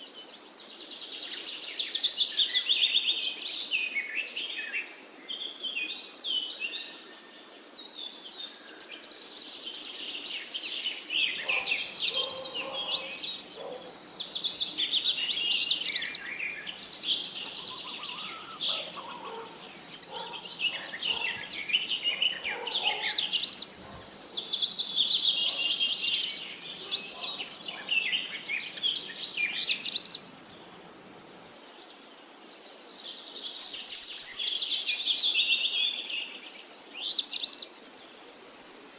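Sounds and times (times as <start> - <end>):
bird chirps and trills: 10.1 - 32.2.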